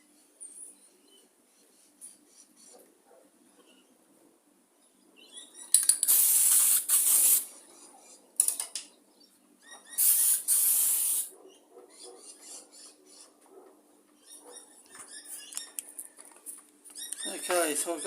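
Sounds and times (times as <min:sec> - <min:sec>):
spray can hissing: 0:05.8 - 0:07.5, 0:10.0 - 0:11.3.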